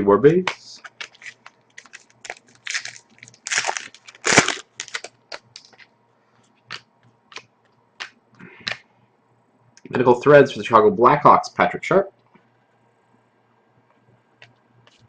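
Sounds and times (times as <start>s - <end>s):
cards rustling and scraping: 0.5s - 5.9s.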